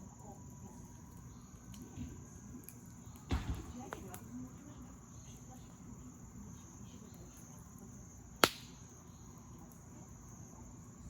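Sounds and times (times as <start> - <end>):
crickets chirring: 0.0 - 11.0
campfire wood cracking: 0.1 - 5.5, 7.0 - 9.9.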